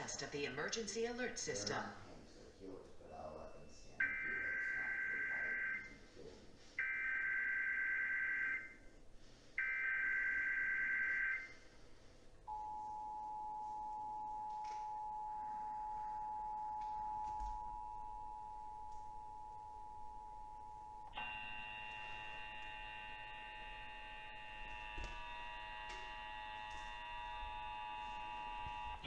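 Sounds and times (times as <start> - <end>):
steady two-tone attention signal: 3.0 - 5.9.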